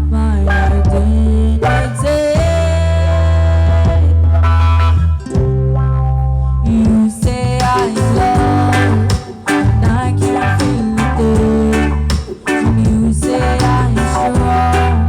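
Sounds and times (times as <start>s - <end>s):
bass guitar: 0.0s - 15.0s
electric guitar: 0.0s - 15.0s
steady drum beat: 6.7s - 15.0s.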